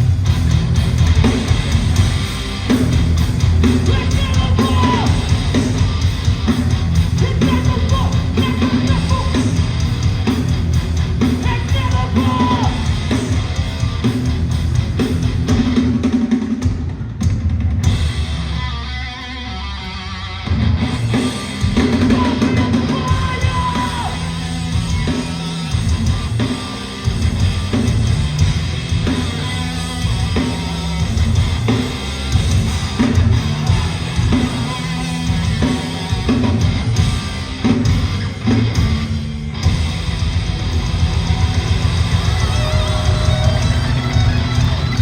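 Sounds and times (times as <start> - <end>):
hardcore band playing live: 0.0 - 45.0.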